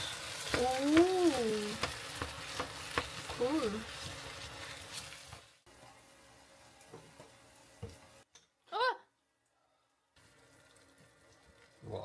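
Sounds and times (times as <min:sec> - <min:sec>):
vegetables sizzling in frying pan: 0:00.0 - 0:08.3.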